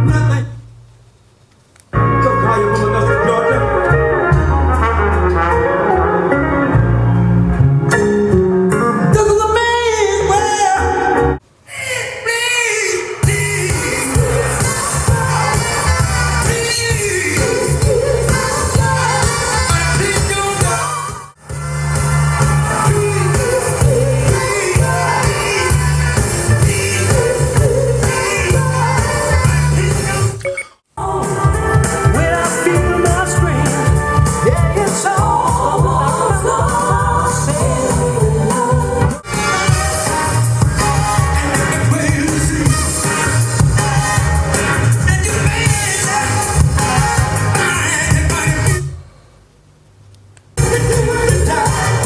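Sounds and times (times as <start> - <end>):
soul song through speakers: 1.9 - 30.4, 31.0 - 49.2, 50.6 - 52.0
heavy bass line: 2.0 - 10.4, 13.2 - 30.3, 31.0 - 49.0.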